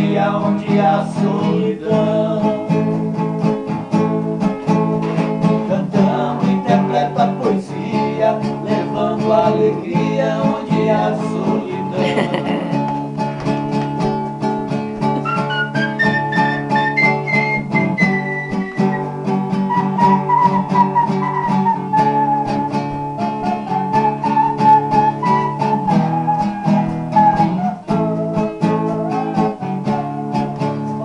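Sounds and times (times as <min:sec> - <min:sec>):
guitar picked in steady rhythm: 0:00.0 - 0:31.0
held sliding melody line: 0:15.2 - 0:31.0.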